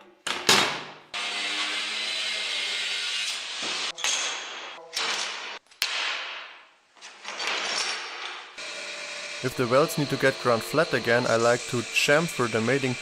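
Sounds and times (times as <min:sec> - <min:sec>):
chop saw cutting steel: 0:08.6 - 0:13.0.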